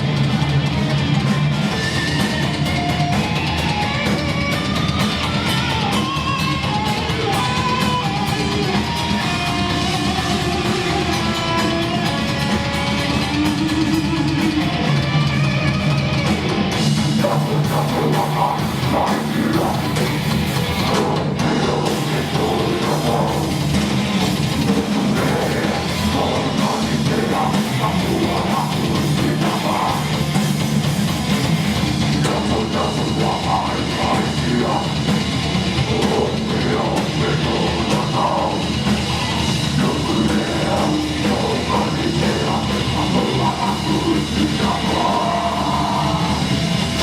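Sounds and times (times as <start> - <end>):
distorted guitars: 0.0 - 47.0
pounding drum kit: 0.0 - 47.0.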